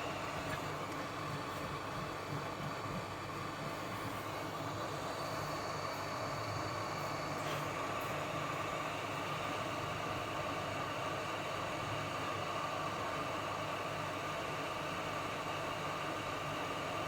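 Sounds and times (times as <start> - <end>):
hot-air station blowing hiss: 0.0 - 12.8.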